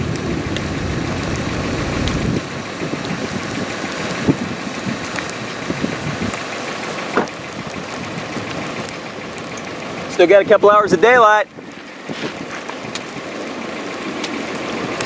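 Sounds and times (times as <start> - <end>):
wind buffeting microphone: 0.0 - 3.3.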